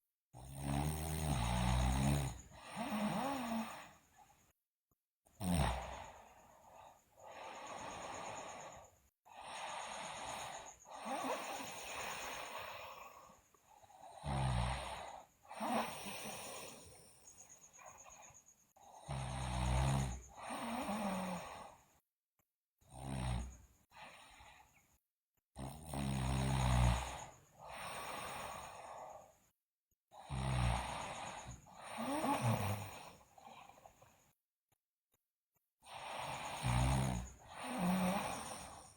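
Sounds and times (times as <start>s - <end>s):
girl snoring: 0.4s - 4.4s, 5.4s - 21.9s, 22.9s - 24.6s, 25.6s - 29.4s, 30.1s - 34.2s, 35.8s - 38.9s
breathy breaths: 5.7s - 14.2s.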